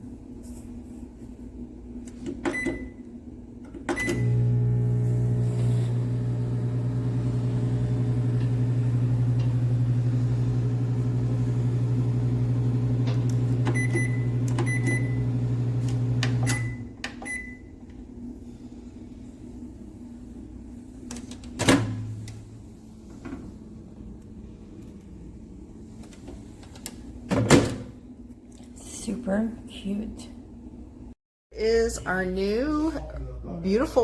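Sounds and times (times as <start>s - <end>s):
microwave oven humming: 2.3s - 18.4s
microwave keypad beeps: 2.5s - 3.0s, 13.3s - 15.6s, 16.4s - 17.7s.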